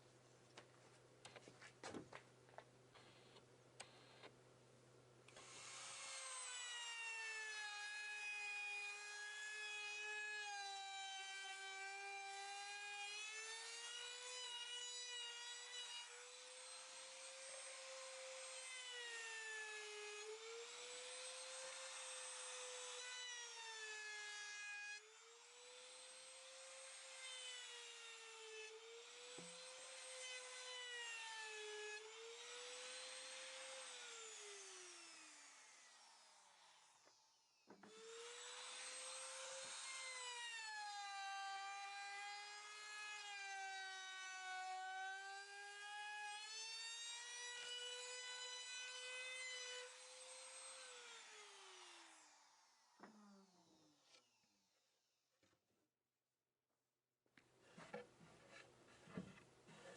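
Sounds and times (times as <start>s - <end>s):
power tool whining on wood: 5.3s - 54.6s.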